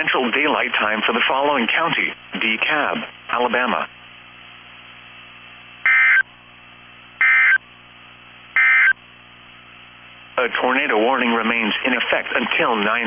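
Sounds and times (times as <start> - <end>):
faint steady hum: 0.0 - 13.0
two-tone digital data squawk: 5.9 - 6.2, 7.2 - 7.6, 8.6 - 9.0.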